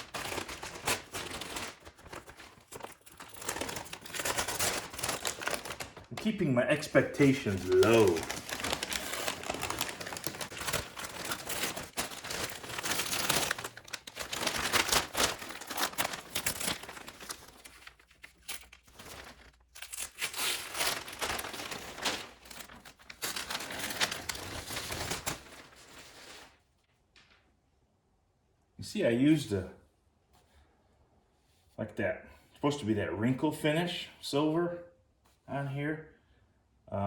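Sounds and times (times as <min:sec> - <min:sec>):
tape and paper crinkling and tearing: 0:00.0 - 0:26.6.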